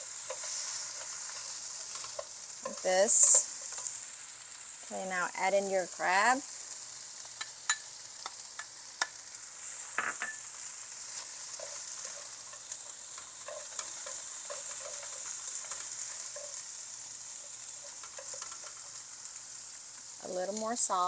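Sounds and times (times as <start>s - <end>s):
food sizzling in a pan: 0.0s - 21.0s
utensil scraping a pan: 9.6s - 16.6s.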